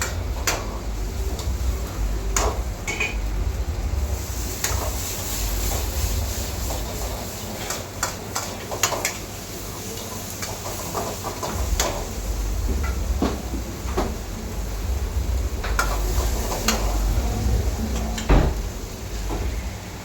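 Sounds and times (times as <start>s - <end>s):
steady low rumble: 0.0s - 7.0s, 11.4s - 20.0s.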